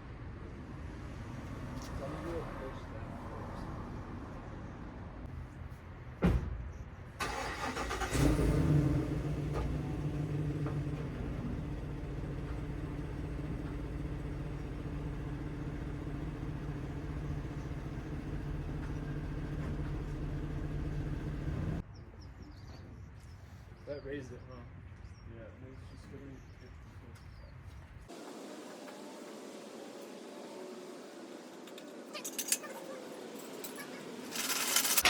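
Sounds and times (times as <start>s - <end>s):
car engine cranking and idling: 7.2s - 21.8s.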